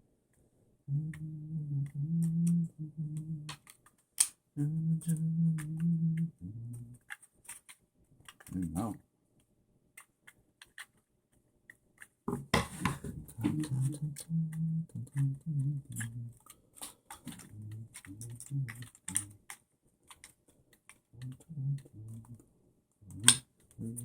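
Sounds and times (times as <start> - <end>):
plastic parts clicking and tapping: 3.5 - 4.4, 7.0 - 8.6, 15.9 - 22.5.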